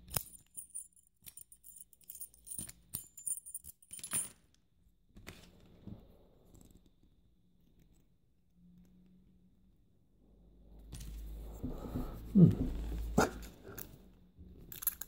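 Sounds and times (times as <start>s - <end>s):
keys jangling on a ring: 0.0s - 4.4s, 14.7s - 15.0s.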